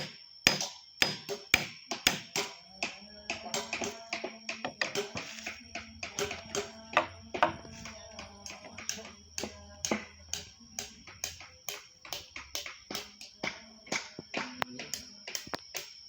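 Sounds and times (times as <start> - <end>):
carving tools tapping wood: 0.0 - 16.0.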